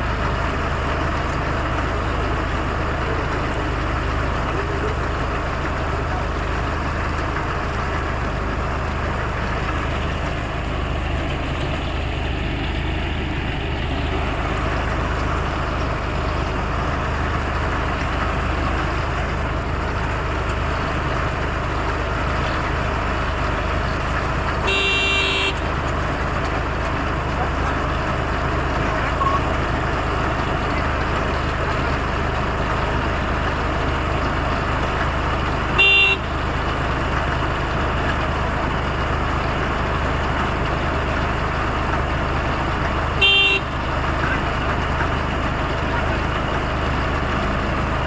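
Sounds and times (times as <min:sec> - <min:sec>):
tractor engine running: 0:00.0 - 0:48.0.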